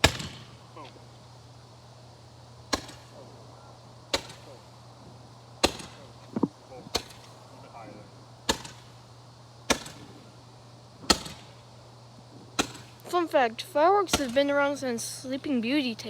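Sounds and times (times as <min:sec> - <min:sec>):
roman candle pops: 0:04.1 - 0:04.6, 0:05.6 - 0:07.4, 0:08.5 - 0:08.9, 0:09.7 - 0:10.1, 0:11.0 - 0:11.6, 0:12.6 - 0:13.1.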